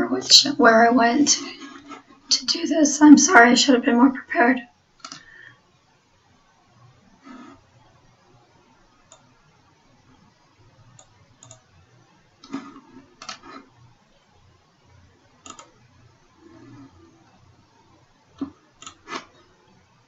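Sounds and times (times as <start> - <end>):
computer mouse clicks: 5.0 - 5.3, 9.1 - 9.3, 10.9 - 11.7, 12.4 - 13.6, 15.4 - 15.8, 18.4 - 19.4.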